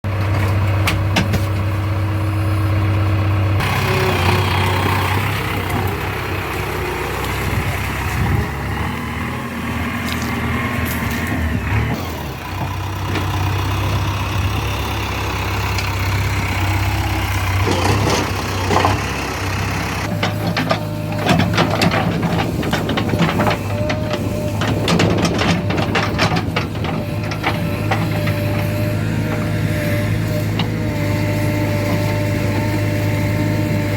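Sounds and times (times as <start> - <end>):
diesel engine running: 0.0 - 33.9
sharp metal clanks and rattles: 20.0 - 29.0.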